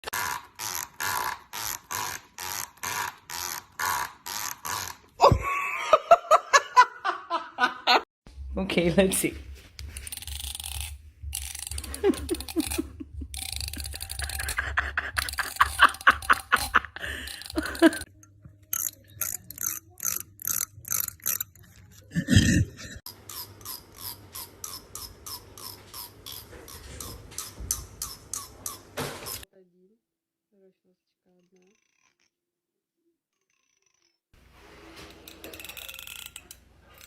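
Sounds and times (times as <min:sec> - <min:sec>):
comb teeth scratching: 0:09.7 - 0:22.3, 0:23.0 - 0:29.4, 0:35.0 - 0:37.0.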